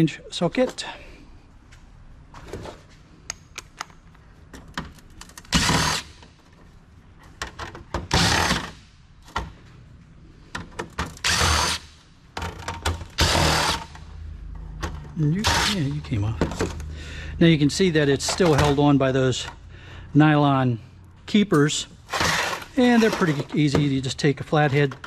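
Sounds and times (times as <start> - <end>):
cordless driver running: 15.4 - 15.8, 22.1 - 23.3.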